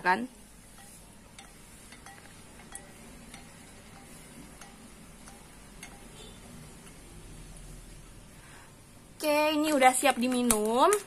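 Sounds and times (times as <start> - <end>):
metal spoon clinking in glass: 0.7 - 6.4.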